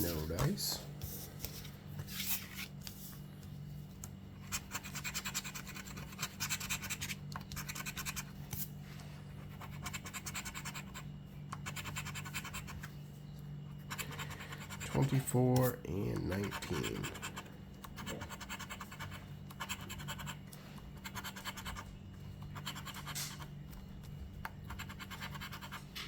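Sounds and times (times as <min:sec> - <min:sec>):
lottery ticket being scratched: 0:00.0 - 0:03.2, 0:04.4 - 0:08.5, 0:11.6 - 0:12.9, 0:13.8 - 0:20.4, 0:21.0 - 0:23.6, 0:24.7 - 0:25.9
steady low hum: 0:00.0 - 0:26.0.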